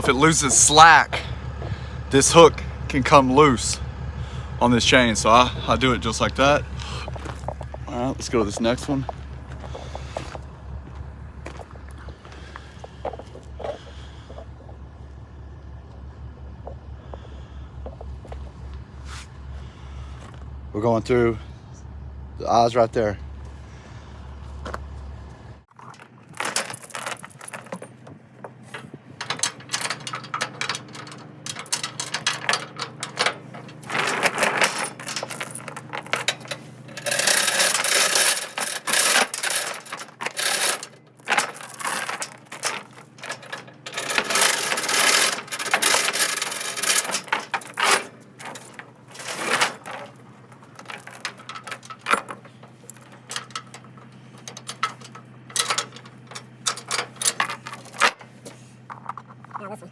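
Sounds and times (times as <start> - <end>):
steel chain rattling and clinking: 25.8 - 58.3.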